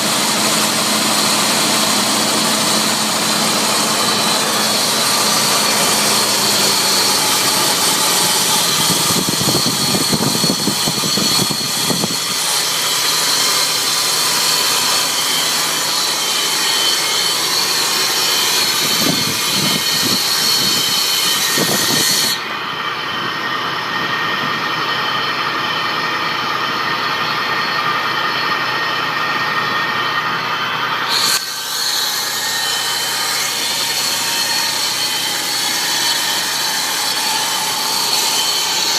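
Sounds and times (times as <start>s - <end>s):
car engine running: 0.0s - 16.0s
strange mechanical noise: 0.0s - 38.9s.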